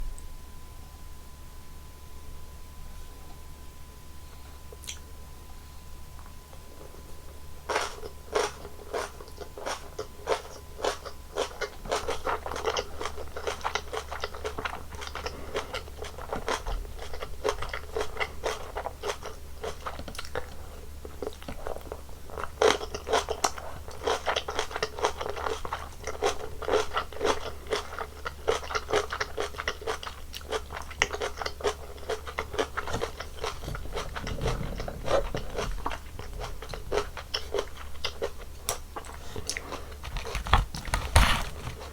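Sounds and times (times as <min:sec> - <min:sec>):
crunching and chewing food: 0:04.2 - 0:05.2, 0:06.1 - 0:41.9.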